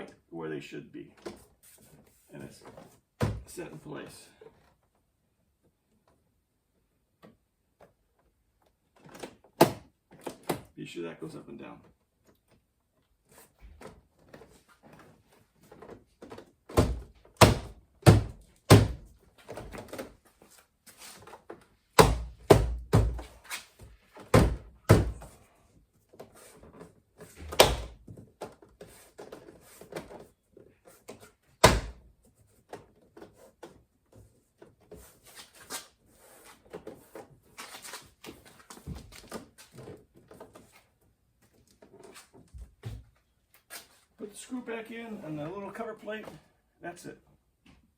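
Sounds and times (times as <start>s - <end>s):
hand thumping plastic panel: 16.7s - 19.1s, 22.0s - 23.3s, 24.3s - 25.3s, 27.5s - 28.0s, 31.6s - 32.0s.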